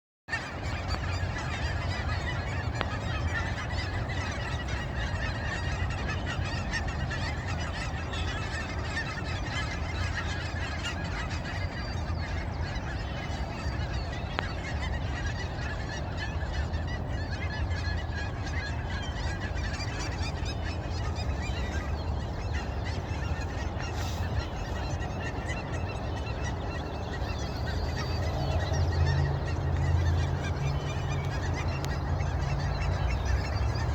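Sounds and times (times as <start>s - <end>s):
geese honking: 0.3s - 33.9s
steady low rumble: 11.7s - 33.9s.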